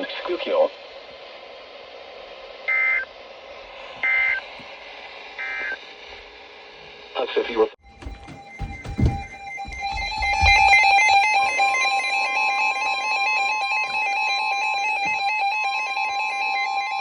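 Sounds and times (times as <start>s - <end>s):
short thump: 7.9s - 10.8s.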